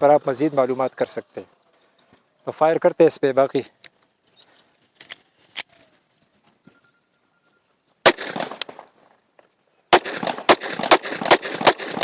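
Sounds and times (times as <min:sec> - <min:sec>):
pistol shots with echo: 0:08.0 - 0:08.8, 0:09.9 - 0:12.0.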